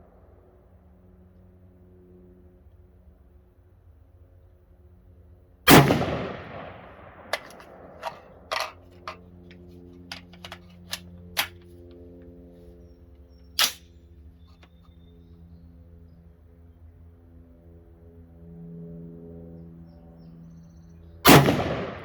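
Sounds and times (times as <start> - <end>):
rifle shot with echo: 5.7 - 9.2, 13.6 - 13.8, 21.3 - 22.0
sharp clicks and cracks: 7.3 - 9.2, 10.1 - 11.6, 13.6 - 13.8.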